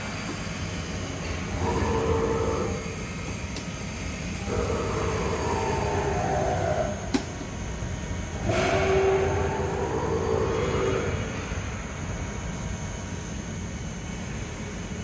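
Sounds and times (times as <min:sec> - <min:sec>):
lathe machine hum: 0:00.0 - 0:13.7
machine whine: 0:00.0 - 0:15.0.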